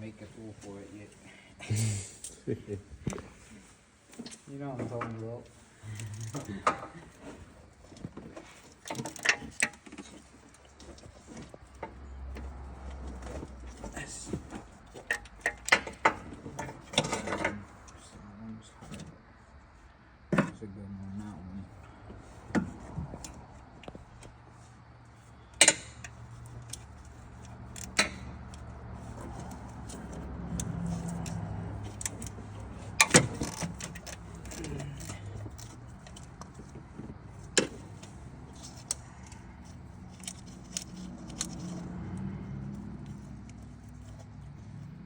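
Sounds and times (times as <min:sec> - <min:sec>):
metal tools clanking: 0:01.8 - 0:18.2, 0:25.4 - 0:44.7.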